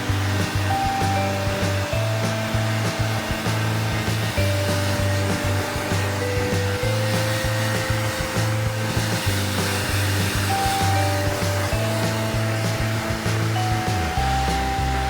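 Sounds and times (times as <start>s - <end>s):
background music: 0.0s - 15.0s
hair dryer blowing: 0.0s - 15.0s.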